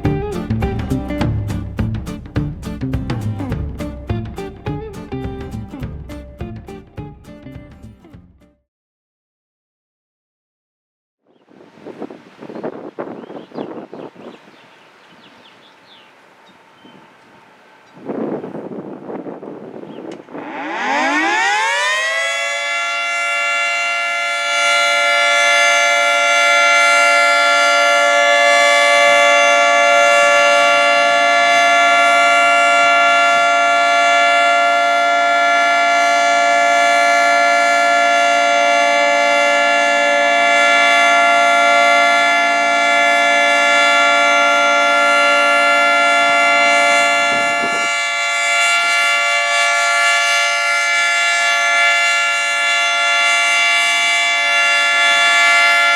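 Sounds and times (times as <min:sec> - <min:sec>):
two-tone warning siren: 0:20.1 - 0:55.9.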